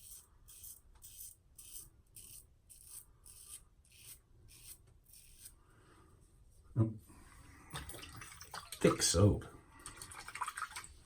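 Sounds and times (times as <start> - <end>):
razor scraping stubble: 0.0 - 5.6.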